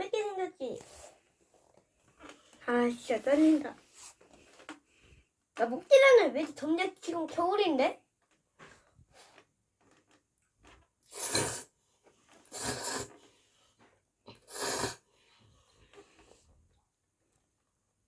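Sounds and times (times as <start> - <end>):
loud airy mouth noises: 11.1 - 11.6, 12.5 - 13.1.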